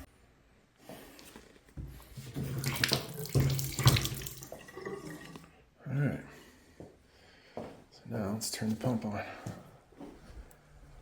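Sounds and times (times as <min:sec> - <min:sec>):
water rushing through pipes: 0:02.2 - 0:05.6.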